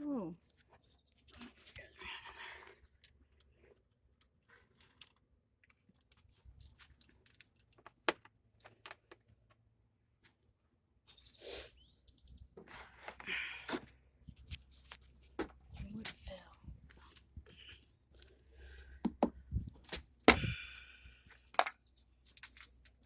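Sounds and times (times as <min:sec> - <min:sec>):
hand tools clicking and clinking: 0:15.4 - 0:23.0.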